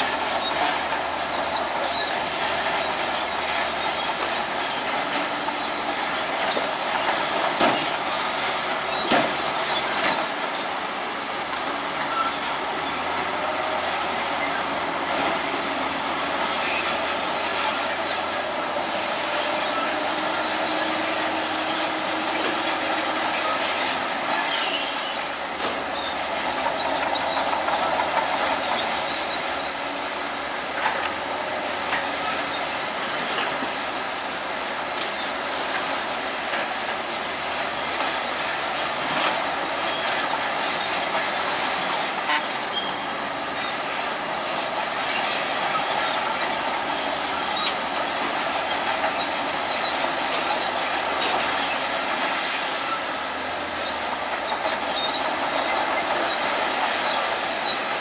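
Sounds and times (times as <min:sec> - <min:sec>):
diesel engine running: 0:00.0 - 0:42.0
steel tracks clanking and squealing: 0:00.0 - 0:58.0.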